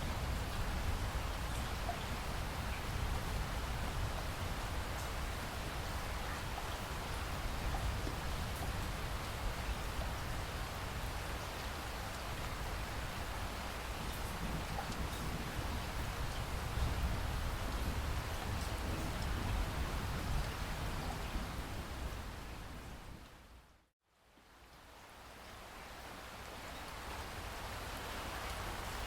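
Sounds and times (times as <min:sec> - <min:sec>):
steady rain hiss: 0:00.0 - 0:29.0
faint raindrop ticks: 0:04.9 - 0:05.2, 0:11.3 - 0:19.7.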